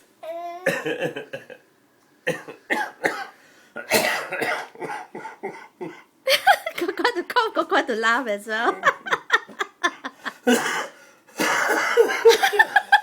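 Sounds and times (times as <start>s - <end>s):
man coughing harshly: 0.6s - 1.6s, 2.2s - 6.0s, 10.4s - 12.4s.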